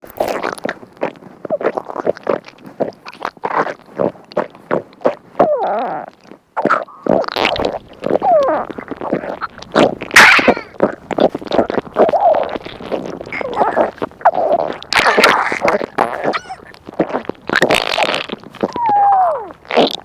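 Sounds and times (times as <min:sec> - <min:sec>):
stomach gurgling: 0:00.0 - 0:20.0.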